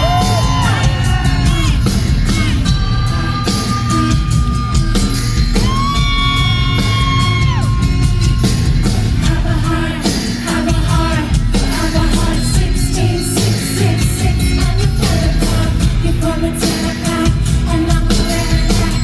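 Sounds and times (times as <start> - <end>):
loud band music: 0.0 - 19.0.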